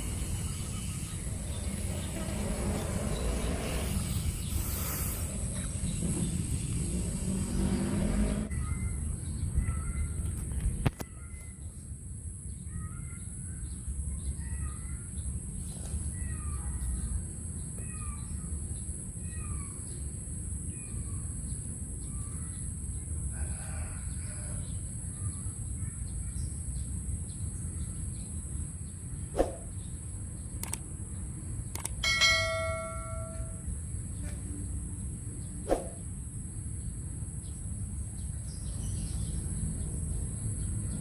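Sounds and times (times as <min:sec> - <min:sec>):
high hiss: 0:00.0 - 0:08.3
low rumble: 0:00.0 - 0:09.6
bird chirping: 0:00.0 - 0:11.8.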